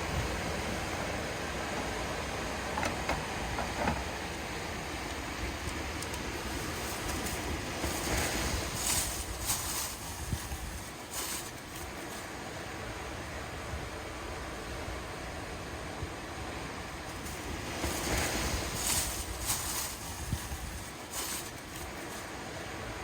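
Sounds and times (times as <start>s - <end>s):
sea surf washing on shore: 0.0s - 23.0s
wind on the microphone: 6.2s - 11.0s, 17.2s - 21.0s.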